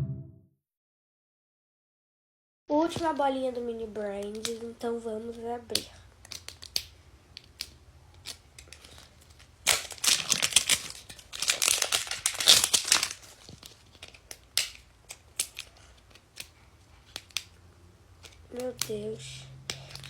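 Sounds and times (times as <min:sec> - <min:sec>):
plastic wrapping crinkling: 0:05.6 - 0:17.5
small clicks and rustles: 0:05.7 - 0:17.6.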